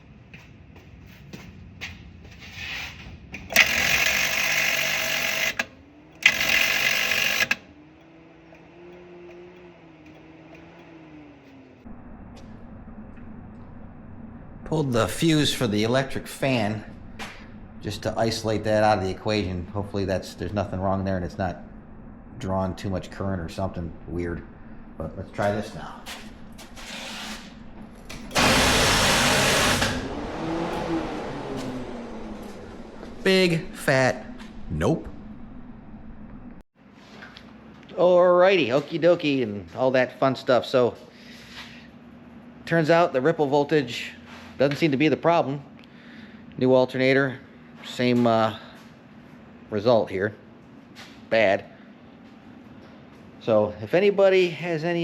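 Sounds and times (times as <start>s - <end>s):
starter motor cranking: 3.5s - 10.9s, 11.9s - 36.6s
electric power tool whirring: 3.5s - 11.6s, 25.5s - 34.6s.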